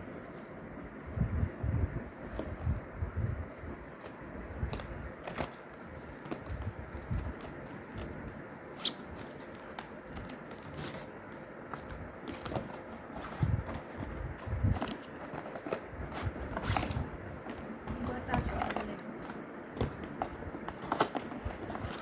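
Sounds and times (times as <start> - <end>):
packaging rustling: 3.9 - 22.0
box scraping: 12.3 - 22.0.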